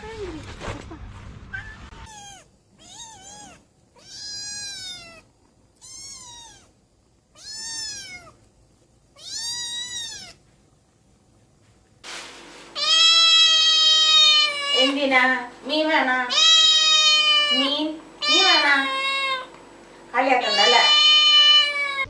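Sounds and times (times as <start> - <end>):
cat meowing: 1.5 - 8.4, 9.2 - 10.4, 12.8 - 15.0, 16.3 - 19.5, 20.4 - 22.0.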